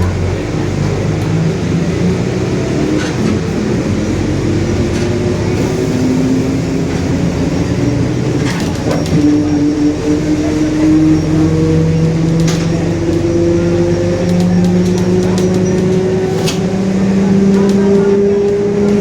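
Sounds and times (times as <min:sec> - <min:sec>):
bus drivetrain whining drone: 0:00.0 - 0:19.0.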